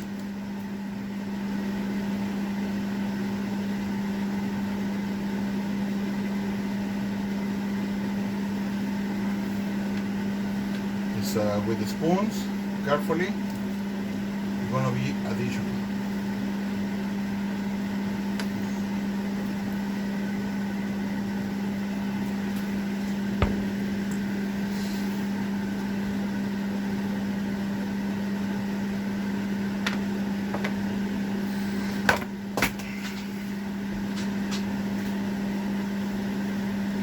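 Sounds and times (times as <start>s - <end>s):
steady machine hum: 0.0s - 37.0s.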